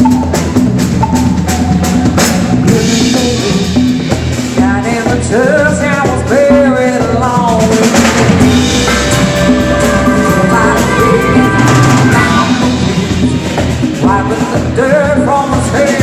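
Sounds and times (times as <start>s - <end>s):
drum kit: 0.0s - 16.0s
live band playing: 0.0s - 16.0s
sliding melody line: 7.7s - 14.1s.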